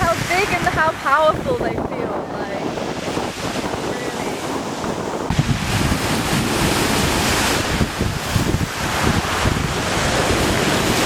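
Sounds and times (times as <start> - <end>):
sea waves breaking: 0.0 - 11.0
wind buffeting microphone: 0.0 - 11.0.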